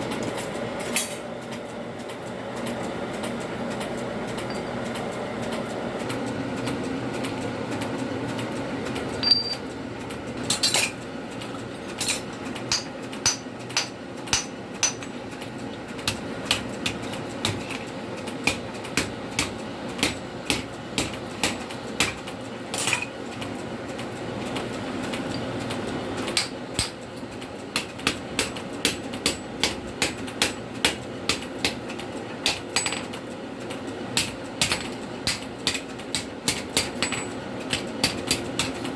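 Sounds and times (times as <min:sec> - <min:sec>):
hammer striking steel on anvil: 0:09.2 - 0:09.6, 0:12.7 - 0:15.1.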